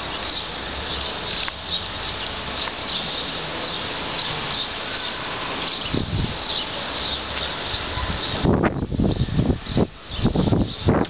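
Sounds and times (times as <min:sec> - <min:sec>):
gusty wind: 0:00.0 - 0:11.0
small birds chirping: 0:00.0 - 0:11.0
wind buffeting microphone: 0:05.5 - 0:11.0.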